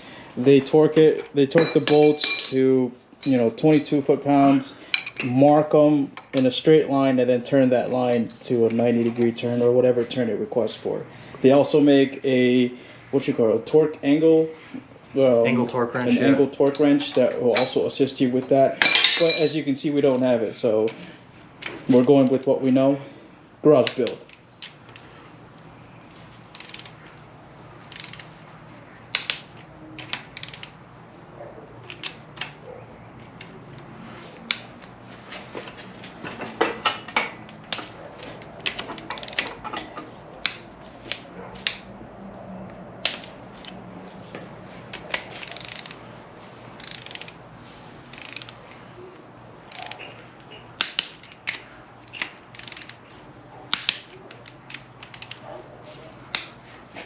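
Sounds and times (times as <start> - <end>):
metallic clinks of tools: 1.6 - 2.6, 18.8 - 19.6
hand ratchet clicking: 26.5 - 27.0, 27.9 - 28.3, 29.1 - 30.8, 38.2 - 39.7, 44.9 - 46.0, 46.8 - 47.4, 48.1 - 48.6, 49.7 - 50.1, 50.8 - 53.0, 53.7 - 55.4.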